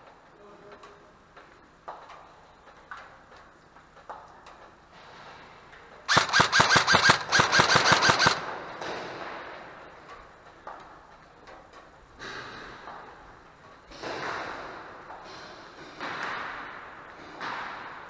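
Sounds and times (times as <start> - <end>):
airsoft gun rapid firing: 6.1 - 9.0.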